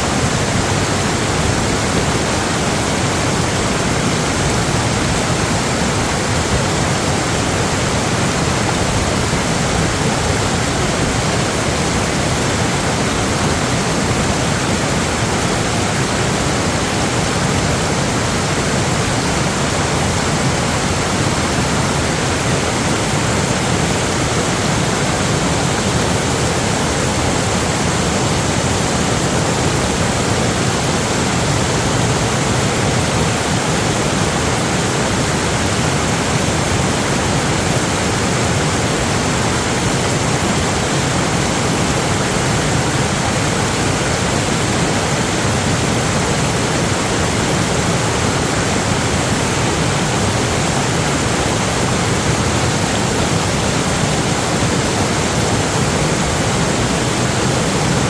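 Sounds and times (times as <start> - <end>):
water rushing: 0.0 - 58.0.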